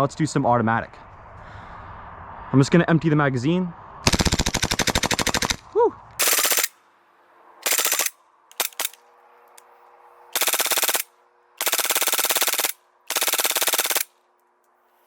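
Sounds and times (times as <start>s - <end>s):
airsoft pistol rapid bursts: 4.1s - 5.6s, 6.2s - 6.8s, 7.6s - 9.0s, 10.4s - 14.2s.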